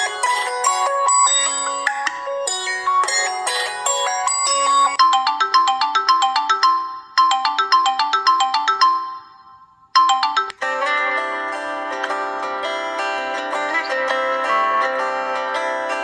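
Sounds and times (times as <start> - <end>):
another ringtone: 0.0 - 11.6
ringtone chiming melody: 0.0 - 16.0.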